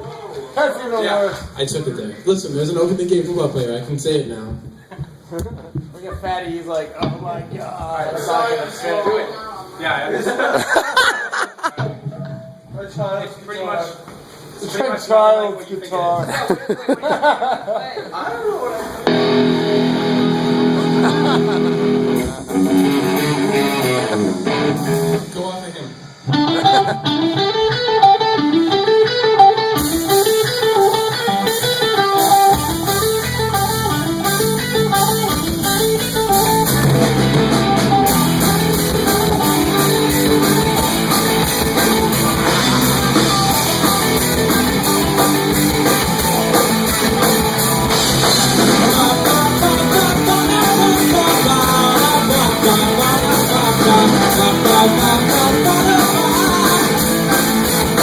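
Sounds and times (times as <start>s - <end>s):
guitar riff: 19.0s - 25.4s, 26.2s - 58.0s
rock band playing: 19.0s - 25.5s, 26.2s - 58.0s
low bass notes: 32.5s - 58.0s.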